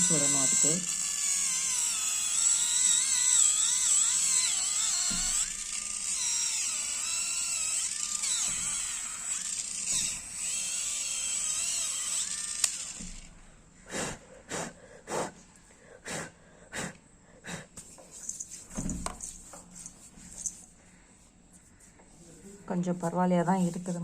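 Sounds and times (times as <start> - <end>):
electric callus remover whining: 0.0 - 14.2.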